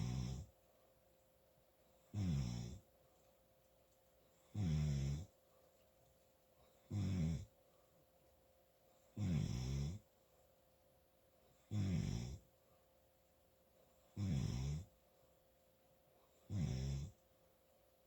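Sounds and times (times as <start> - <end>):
loud snoring: 0.0 - 0.5, 2.2 - 2.8, 4.6 - 5.3, 6.9 - 7.5, 9.2 - 10.0, 11.7 - 12.4, 14.2 - 14.9, 16.5 - 17.2
quiet breathing: 0.0 - 8.2, 8.8 - 10.6, 13.6 - 17.8.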